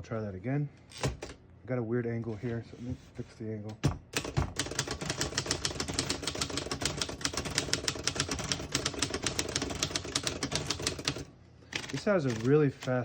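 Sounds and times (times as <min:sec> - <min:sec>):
typewriter typing: 0:03.7 - 0:13.0.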